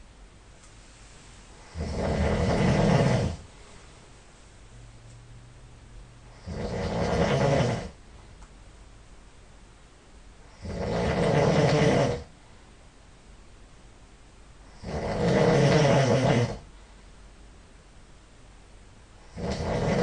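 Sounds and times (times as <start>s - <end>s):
person snoring loudly: 1.6s - 3.4s, 6.3s - 8.0s, 10.6s - 12.3s, 14.7s - 16.7s, 19.2s - 20.0s.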